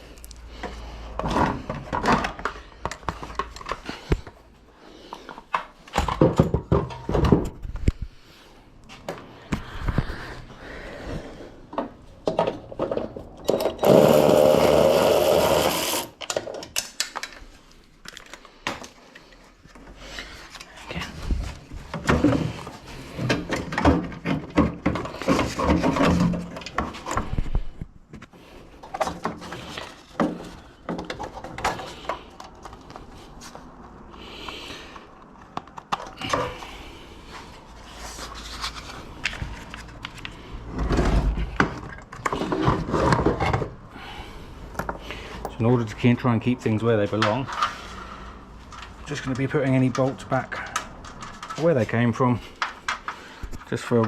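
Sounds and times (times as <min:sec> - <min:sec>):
power tool running: 0:13.8 - 0:16.2.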